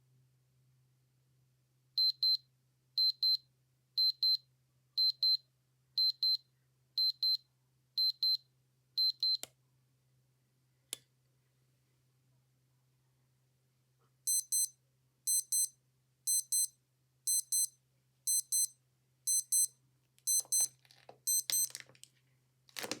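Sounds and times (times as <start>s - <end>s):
watch alarm double beeps: 2.0s - 2.4s, 3.0s - 3.4s, 4.0s - 4.4s, 5.0s - 5.4s, 6.0s - 6.4s, 7.0s - 7.4s, 8.0s - 8.4s, 9.0s - 9.4s, 14.3s - 15.7s, 16.3s - 19.7s, 20.3s - 20.7s, 21.3s - 21.7s
rustling handling noise: 20.2s - 23.0s.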